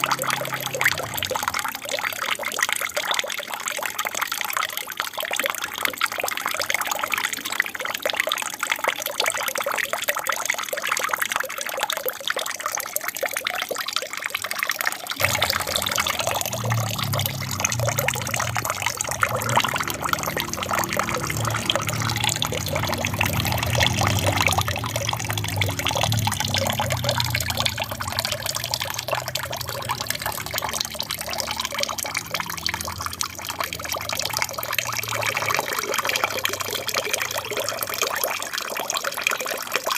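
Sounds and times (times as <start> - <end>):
water trickling and splashing: 0.0 - 39.9
low rumble: 15.2 - 30.8.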